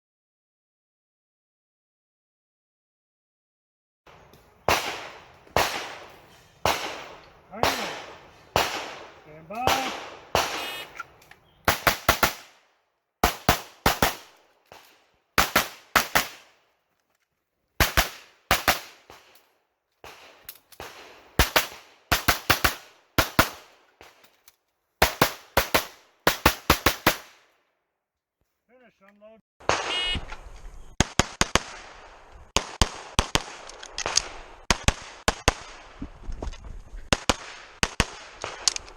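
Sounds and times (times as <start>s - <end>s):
pistol firing rapidly: 4.6s - 11.1s, 11.7s - 12.6s, 13.2s - 14.8s, 15.4s - 16.5s, 17.8s - 19.3s, 20.0s - 23.7s, 25.0s - 27.3s.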